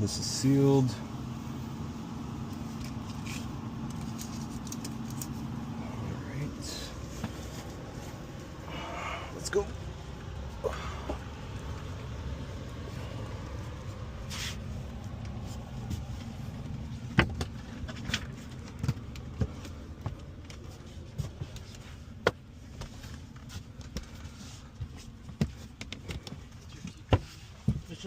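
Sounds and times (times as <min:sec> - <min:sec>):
gear knocks and clicks: 0:02.8 - 0:05.4.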